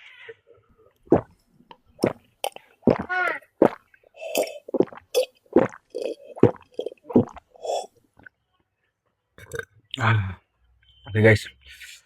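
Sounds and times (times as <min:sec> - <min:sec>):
wet chewing and mouth smacks: 0:02.0 - 0:07.6.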